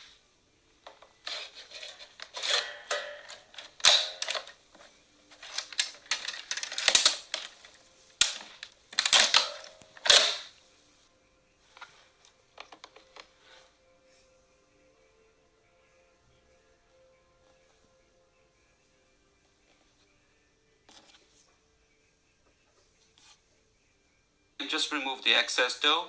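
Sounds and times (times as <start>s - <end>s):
plastic parts scraping rattles: 0.8s - 10.5s
plastic parts snapping: 0.9s - 10.5s
plastic toy parts clicking: 0.9s - 10.5s.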